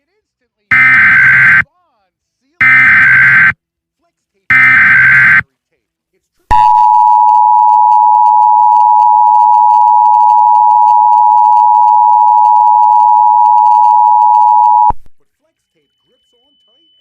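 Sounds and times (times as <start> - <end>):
steady loud alert beep: 0.7 - 1.6, 2.6 - 3.6, 4.5 - 5.4, 6.5 - 15.0.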